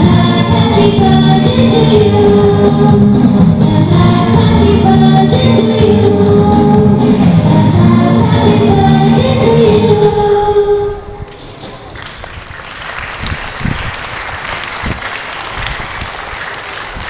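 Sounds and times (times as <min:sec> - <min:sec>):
students singing a birthday song: 0:00.0 - 0:11.2
audience applauding: 0:11.8 - 0:17.0.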